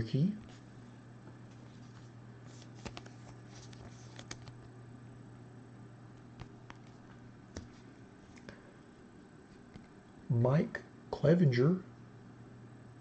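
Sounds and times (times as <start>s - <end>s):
steady low hum: 0.0s - 13.0s
trading cards clicking and rustling: 1.3s - 4.7s.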